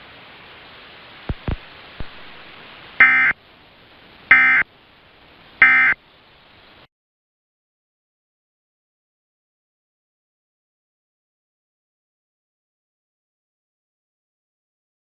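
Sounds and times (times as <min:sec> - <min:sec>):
broadcast hiss: 0:00.0 - 0:06.9
digital data tone bursts: 0:03.0 - 0:03.4, 0:04.3 - 0:04.6, 0:05.6 - 0:06.0.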